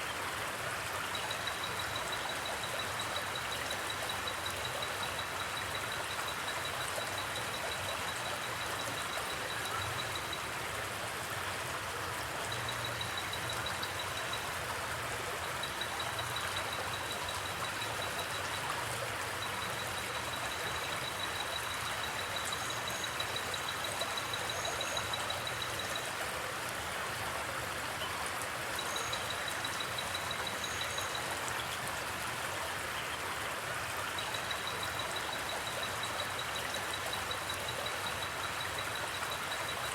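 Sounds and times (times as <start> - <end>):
river water flowing: 0.0 - 39.9
crickets trilling: 12.5 - 26.1, 28.8 - 31.6.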